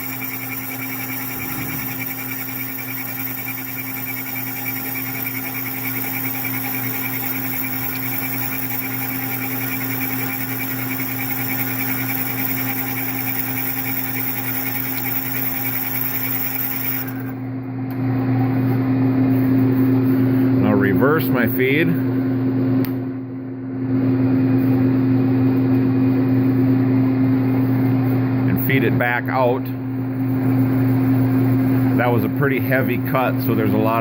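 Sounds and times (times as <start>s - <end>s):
high ringing tool chatter: 0.0s - 17.4s
lathe machine hum: 0.0s - 17.5s.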